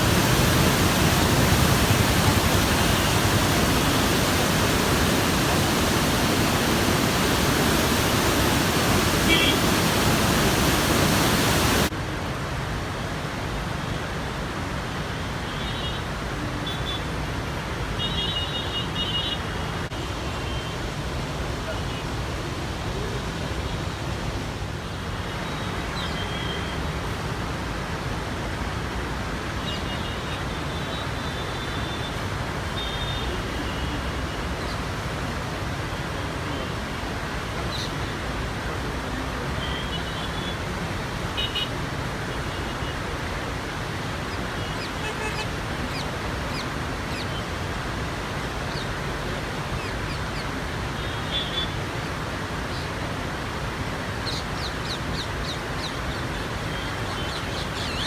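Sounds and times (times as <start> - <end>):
floodwater rushing: 0.0 - 12.2.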